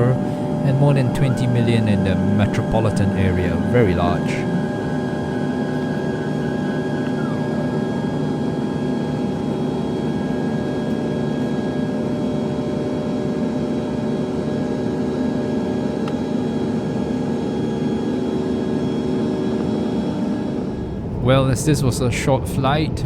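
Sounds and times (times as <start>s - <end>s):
jet engine and airflow rush: 0.0s - 23.0s
steady humming tones: 0.0s - 23.0s.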